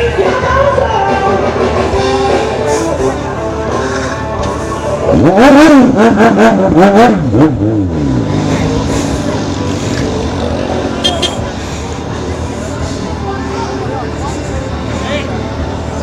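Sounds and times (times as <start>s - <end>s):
background music: 0.0s - 6.8s
motorcycle engine revving: 1.4s - 16.0s.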